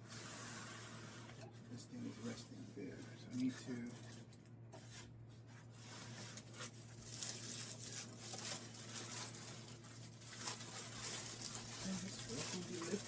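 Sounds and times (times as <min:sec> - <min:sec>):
steady low hum: 0:00.0 - 0:13.0
packaging rustling and scraping: 0:03.3 - 0:13.0.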